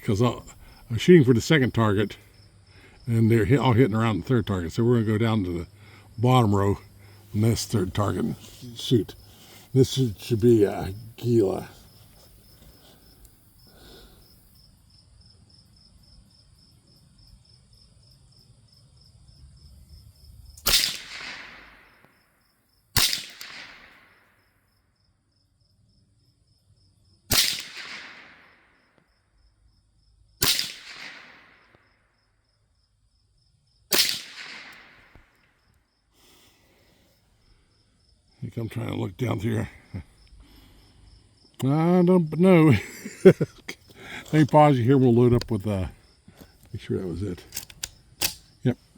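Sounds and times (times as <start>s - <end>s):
rifle shots with echo: 20.6s - 22.0s, 23.0s - 24.3s, 27.3s - 28.8s, 30.4s - 31.8s, 33.9s - 35.4s.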